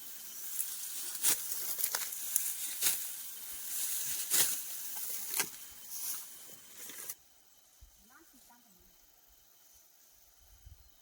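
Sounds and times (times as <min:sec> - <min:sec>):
rice stalks rustling: 0:00.3 - 0:07.2
sharp swishes of stalks: 0:03.7 - 0:04.6.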